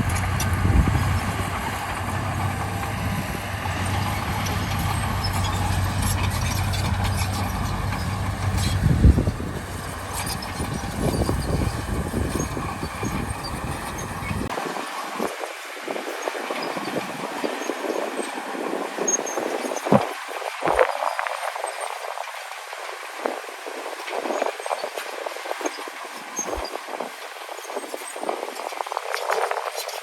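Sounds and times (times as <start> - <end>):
heavy diesel machinery running: 0.0 - 15.1.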